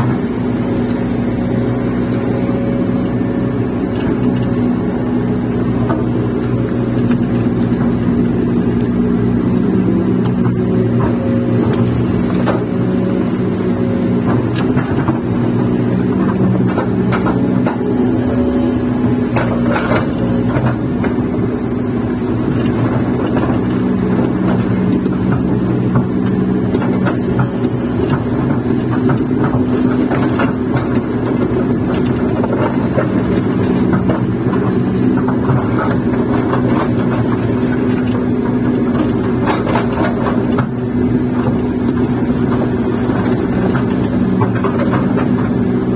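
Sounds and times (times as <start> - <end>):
excavator diesel engine running: 0.0 - 45.9
knocks and clatter: 22.4 - 45.9.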